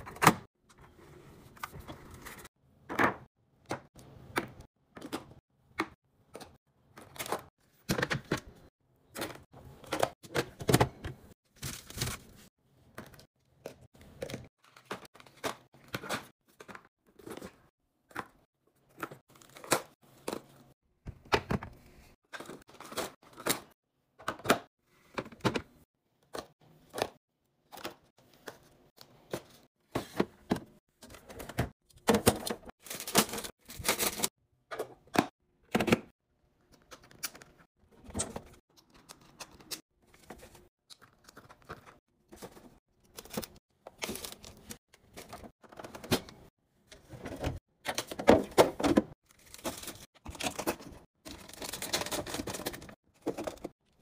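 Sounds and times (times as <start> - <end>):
packaging crinkling: 51.3 - 53.6.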